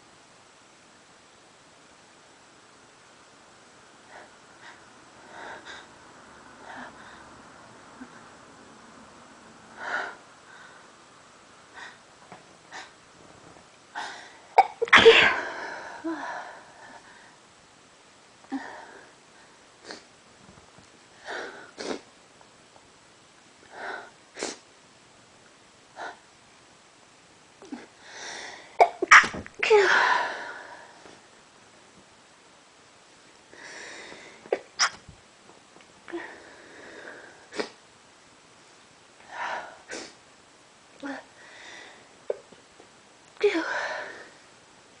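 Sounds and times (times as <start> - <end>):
person sneezing: 14.6 - 15.6, 28.8 - 30.4, 34.5 - 35.0.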